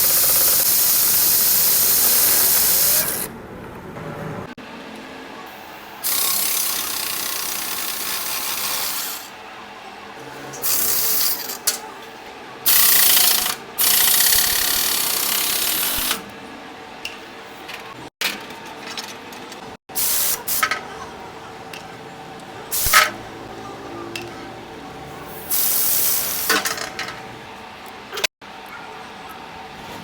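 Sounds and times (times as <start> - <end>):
compressed-air tool hissing: 0.0 - 3.3.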